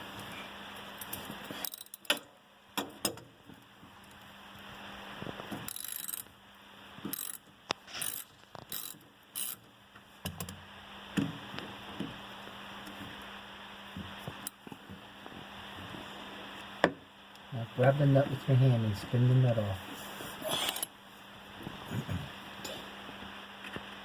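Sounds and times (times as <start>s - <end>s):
ratchet wrench clicking: 1.6s - 2.2s, 5.7s - 6.3s, 7.1s - 9.7s.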